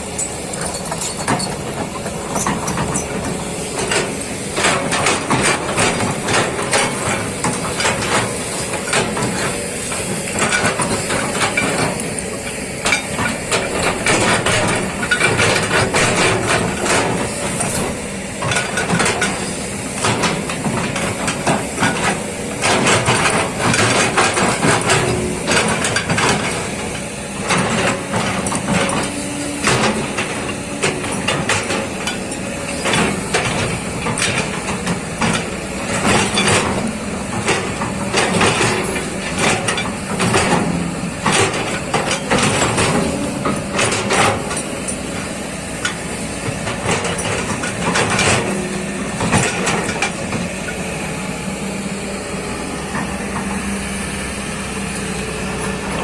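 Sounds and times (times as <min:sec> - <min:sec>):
excavator diesel engine running: 0:00.0 - 0:56.0
excavator knocks and clanks: 0:00.0 - 0:56.0.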